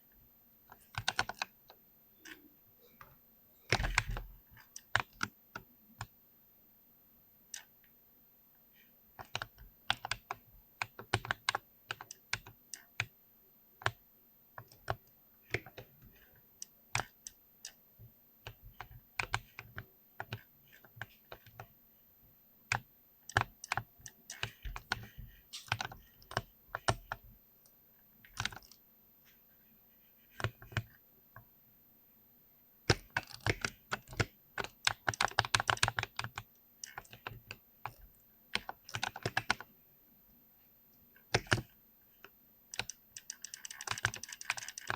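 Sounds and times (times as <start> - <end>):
mechanical keyboard typing: 0.7 - 2.4, 3.7 - 6.1, 9.2 - 13.1, 14.6 - 17.8, 18.4 - 21.7, 22.7 - 27.2, 28.2 - 28.8, 30.3 - 31.0, 32.9 - 39.7, 41.3 - 41.7, 42.7 - 44.9.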